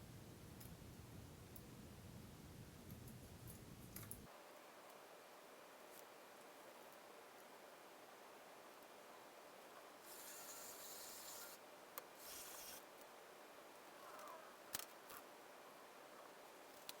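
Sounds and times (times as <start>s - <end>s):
faint scraping strokes: 10.0s - 11.6s, 12.2s - 12.9s.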